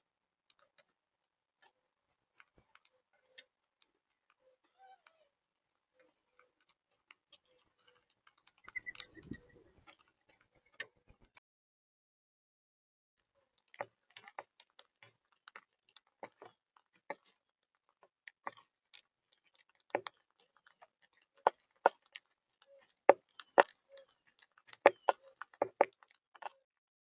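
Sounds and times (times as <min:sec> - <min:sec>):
parrots cracking food with beaks: 0:06.0 - 0:09.1, 0:18.0 - 0:26.6.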